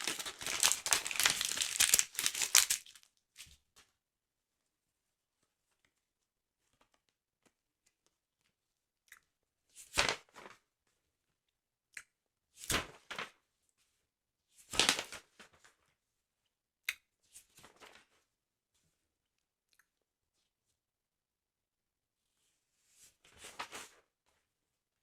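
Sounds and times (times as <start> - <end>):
paper rustling: 0.0 - 3.6.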